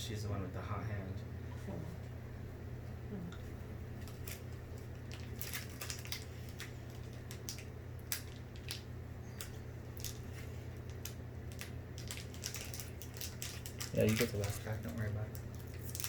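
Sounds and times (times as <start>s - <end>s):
foil wrapper crinkling: 4.0s - 16.0s.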